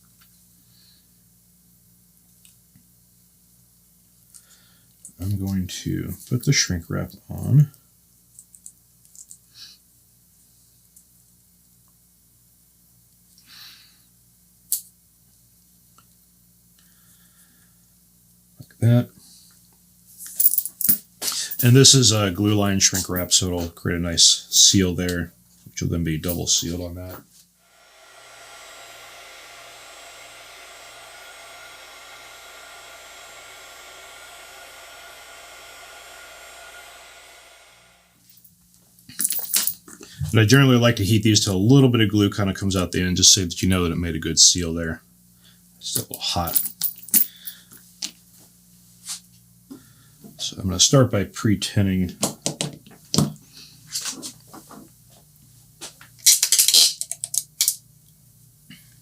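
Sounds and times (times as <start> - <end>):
low steady hum: 0.0 - 52.2
hot air gun blowing: 27.6 - 38.2
tools and wires clattering: 39.1 - 39.9.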